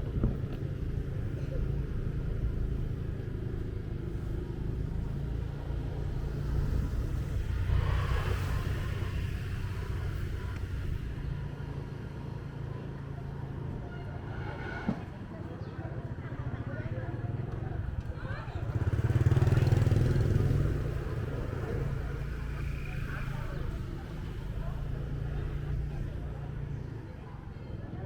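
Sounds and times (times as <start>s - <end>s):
traffic rushing: 0.0s - 27.8s
motorbike engine running: 18.1s - 23.4s.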